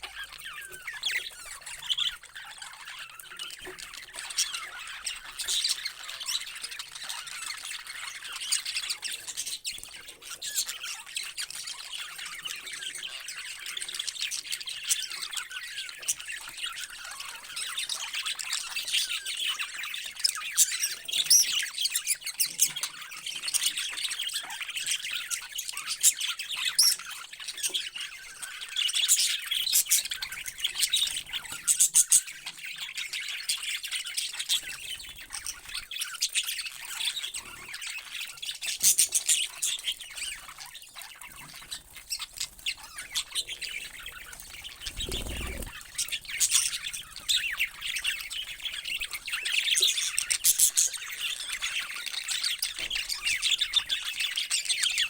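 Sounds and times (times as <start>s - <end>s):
parrots chirping and squawking: 38.8s - 52.6s.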